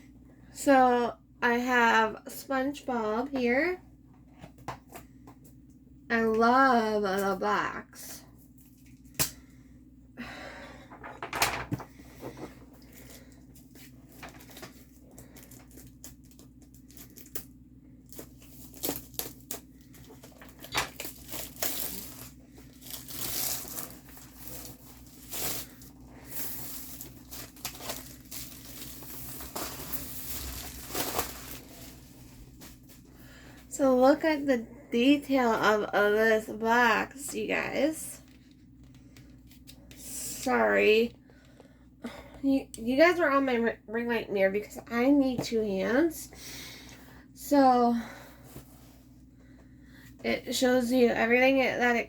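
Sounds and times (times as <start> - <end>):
packaging crinkling and tearing: 14.1 - 32.1.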